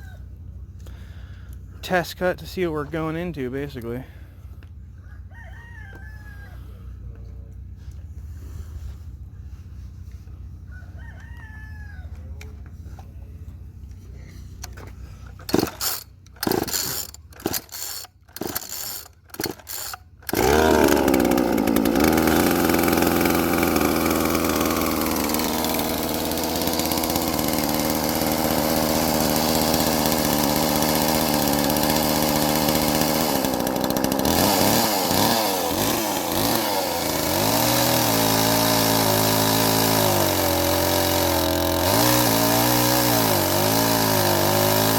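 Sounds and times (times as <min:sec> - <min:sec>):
chainsaw cutting log: 0:14.7 - 0:44.9.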